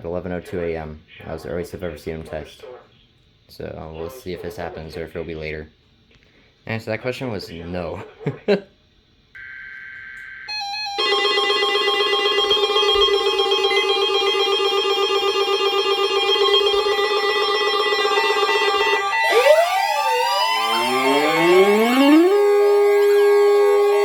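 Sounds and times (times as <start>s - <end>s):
digital data tones: 9.4s - 24.0s
rising and falling siren sweeps: 9.4s - 24.0s
weather alert radio alarms beeping: 9.4s - 24.0s.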